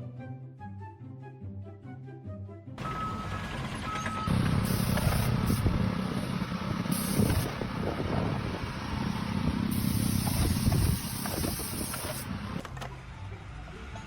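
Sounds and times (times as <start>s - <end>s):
engine running with low rumble: 2.8s - 14.0s.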